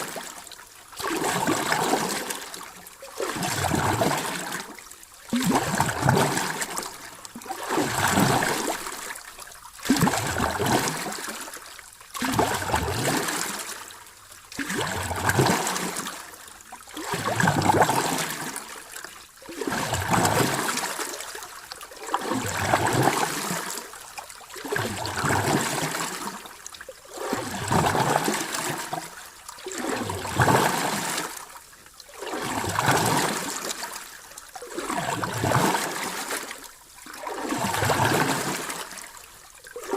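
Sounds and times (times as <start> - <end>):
small sea waves washing in: 14.6 - 16.4, 24.7 - 31.5.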